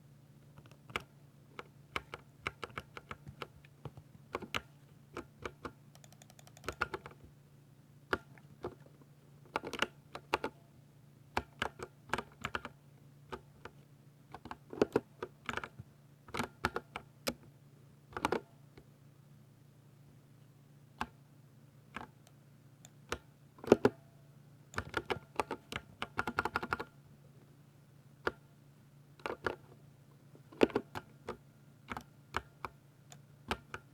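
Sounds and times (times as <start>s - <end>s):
mechanical keyboard typing: 2.0s - 7.2s, 11.4s - 13.4s, 24.7s - 26.9s.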